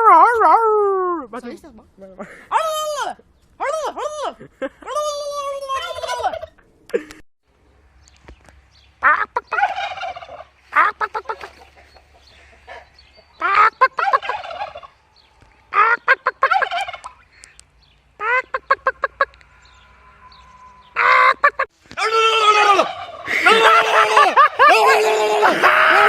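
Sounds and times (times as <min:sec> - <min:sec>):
turkeys gobbling: 0:04.8 - 0:06.7, 0:09.0 - 0:21.7, 0:22.4 - 0:26.0.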